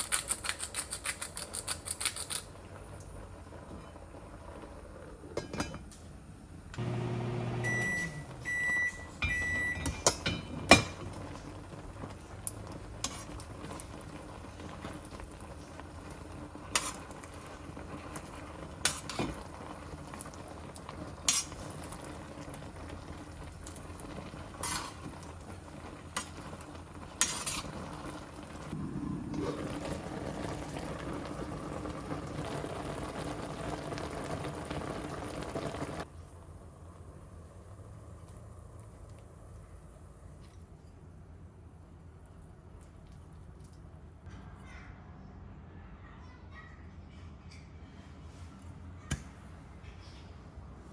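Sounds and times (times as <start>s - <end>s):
loud sizzling: 6.8s - 8.5s, 23.7s - 36.1s
utensil clinking on cookware: 9.2s - 11.1s.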